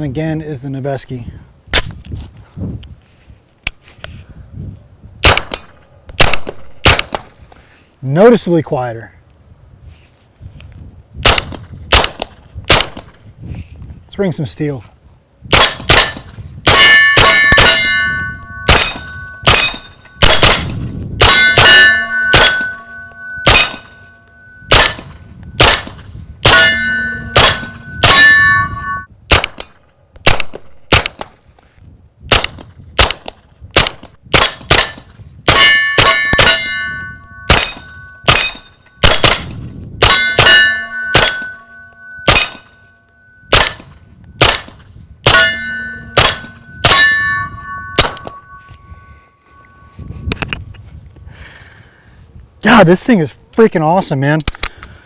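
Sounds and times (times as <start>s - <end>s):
steel targets ringing: 16.7s - 25.8s, 26.4s - 29.1s, 35.5s - 44.6s, 45.2s - 50.0s.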